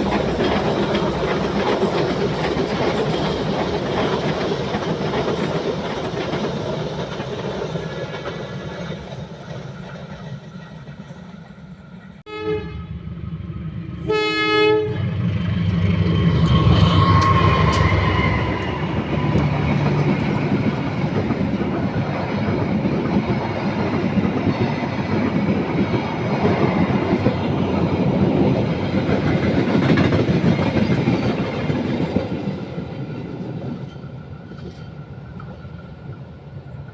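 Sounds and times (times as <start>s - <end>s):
train wheels rumbling on rails: 0.0s - 36.9s
train horn blasts: 12.3s - 13.1s, 14.0s - 15.8s, 16.4s - 19.6s.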